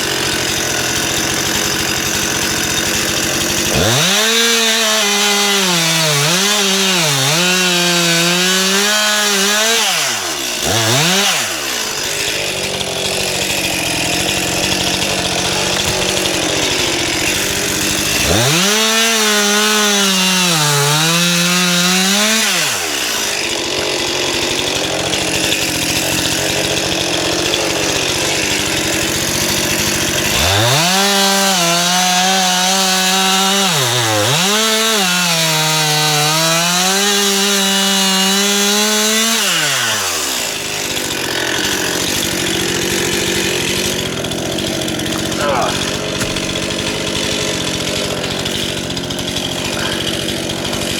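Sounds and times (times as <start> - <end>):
chainsaw cutting wood: 0.0 - 50.9.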